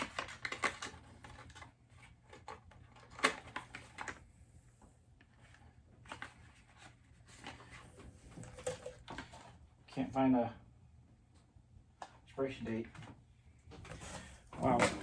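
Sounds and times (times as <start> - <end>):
package rustling and clicking: 0.0 - 4.2, 5.3 - 9.6, 13.7 - 15.0.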